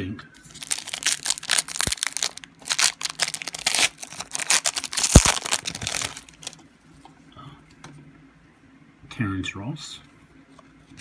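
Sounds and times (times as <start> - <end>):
plastic wrapper crinkling and tearing: 0.5 - 6.6.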